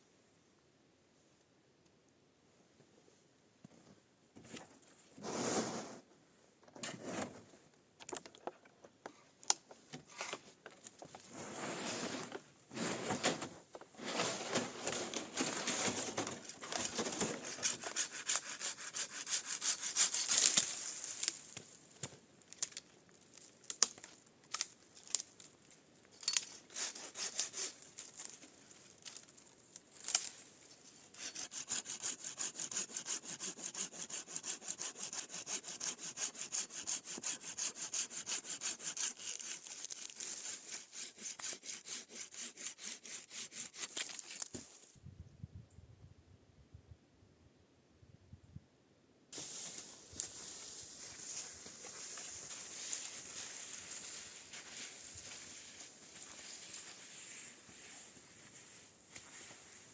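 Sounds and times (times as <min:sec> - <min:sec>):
quick back-and-forth strokes on wood: 0:17.6 - 0:20.4, 0:31.2 - 0:44.3.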